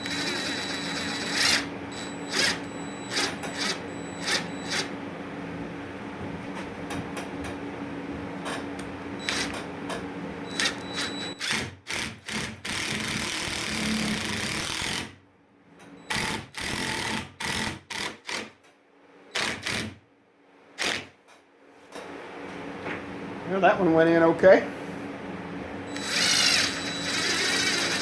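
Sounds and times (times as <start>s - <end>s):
power drill driving screw into wood: 0.0s - 4.9s, 9.2s - 9.5s, 10.6s - 15.0s, 16.1s - 18.5s, 25.9s - 28.0s.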